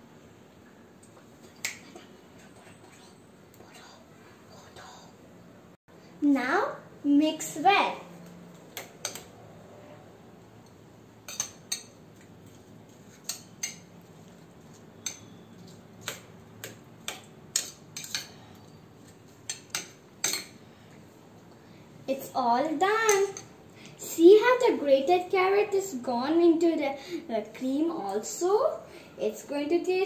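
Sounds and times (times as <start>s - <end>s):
spoon clinking against bowl: 15.0s - 15.8s.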